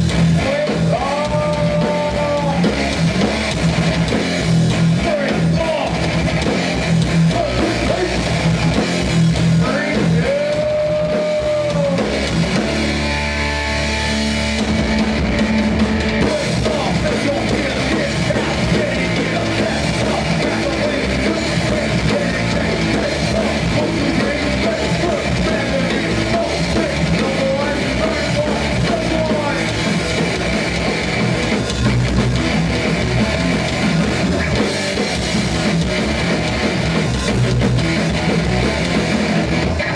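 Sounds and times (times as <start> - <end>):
hardcore band playing live: 0.0 - 39.9
held guitar note rising and falling: 10.2 - 39.9.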